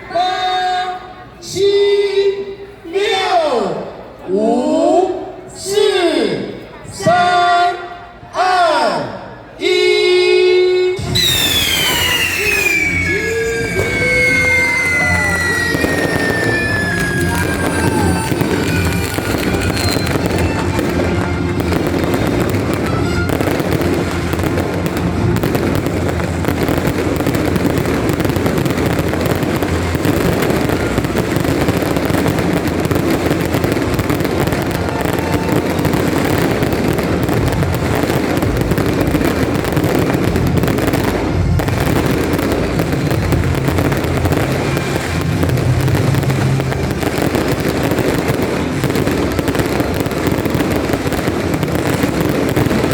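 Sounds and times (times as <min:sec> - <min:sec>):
fireworks crackling and banging: 0:11.0 - 0:52.9.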